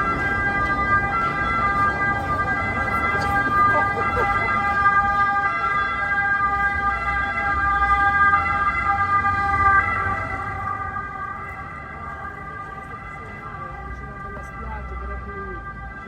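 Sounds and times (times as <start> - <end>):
low traffic rumble: 0.0 - 16.0
two-tone emergency siren: 0.0 - 16.0.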